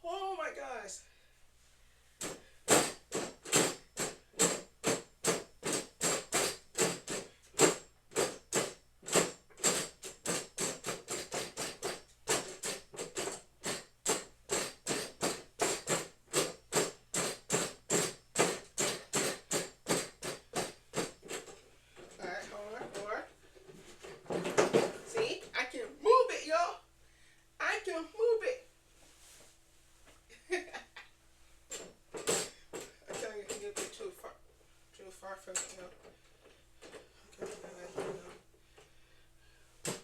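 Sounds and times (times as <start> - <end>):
punching bag being struck: 2.2 - 21.4.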